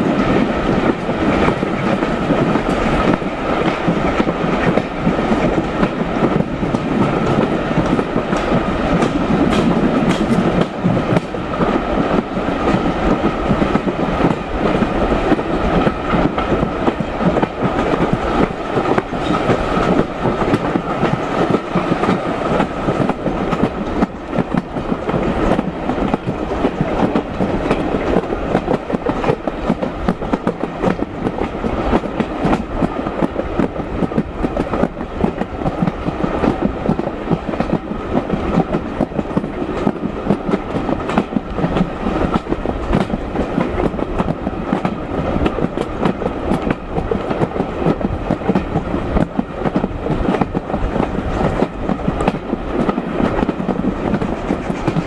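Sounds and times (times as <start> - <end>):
train carriage rumble: 0.0 - 55.0
wheels clicking over rail joints: 0.8 - 33.4.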